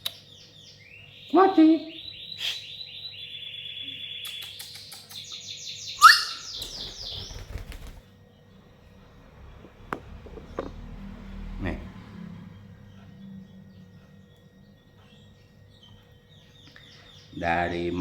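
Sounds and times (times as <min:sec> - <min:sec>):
sharp bird chirp: 0:00.0 - 0:08.0
lovebird chattering: 0:04.1 - 0:08.0.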